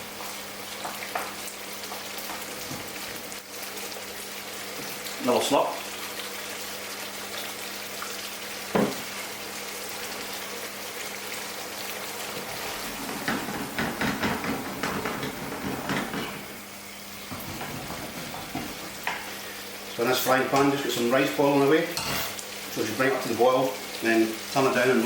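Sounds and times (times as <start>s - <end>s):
sauce sizzling in a pan: 0.0s - 25.0s
pan and utensil clattering: 12.6s - 16.5s, 17.3s - 19.3s, 21.9s - 22.4s.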